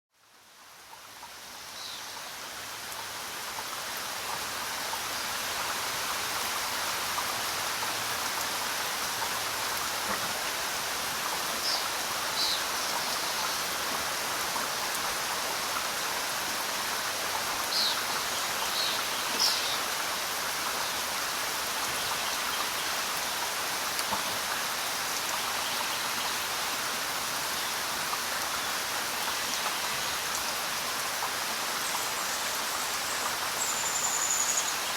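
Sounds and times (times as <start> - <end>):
steady rain falling: 0.1 - 34.9
bird chirps: 33.6 - 34.9.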